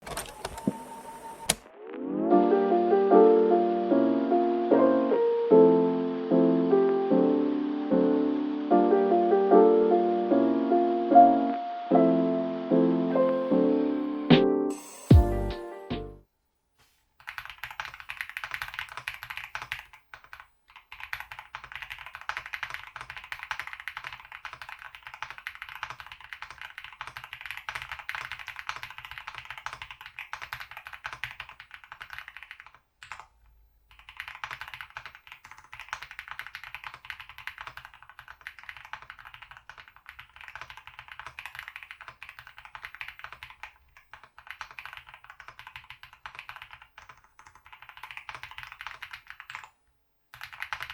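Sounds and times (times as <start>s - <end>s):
fast mechanical keyboard typing: 17.2s - 33.3s, 33.9s - 49.7s, 50.3s - 50.9s.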